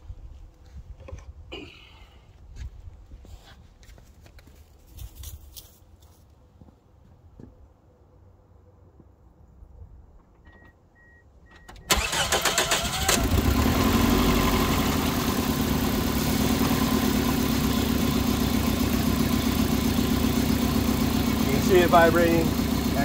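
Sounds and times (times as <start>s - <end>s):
engine idling with misfires: 11.9s - 23.0s
starter cranking engine: 11.9s - 23.0s.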